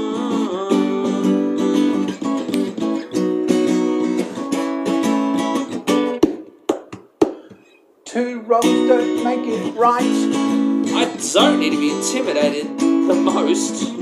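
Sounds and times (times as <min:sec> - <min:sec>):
acoustic guitar strumming: 0:00.0 - 0:06.6, 0:07.4 - 0:14.0.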